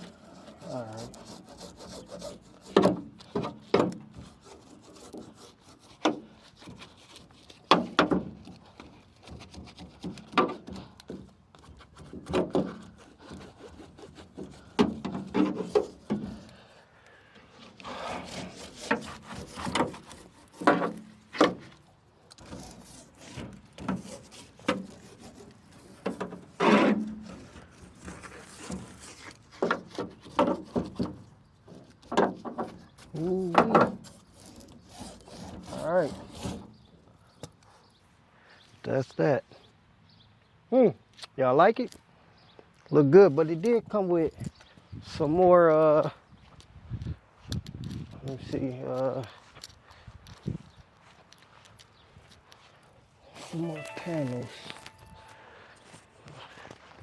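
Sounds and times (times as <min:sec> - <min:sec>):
trim rubbing and scraping: 0:00.0 - 0:16.6, 0:17.5 - 0:37.8.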